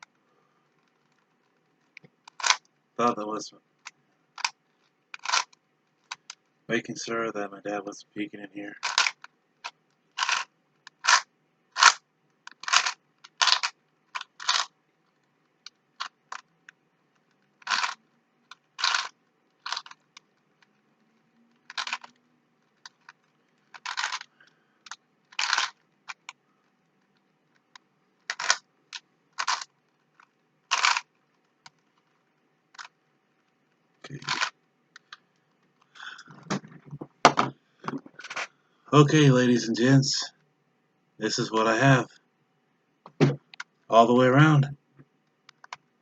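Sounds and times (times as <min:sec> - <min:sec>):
puzzle cube layers clicking: 0:00.8 - 0:02.6, 0:03.8 - 0:06.5, 0:08.8 - 0:24.3, 0:24.9 - 0:33.0, 0:34.1 - 0:35.2.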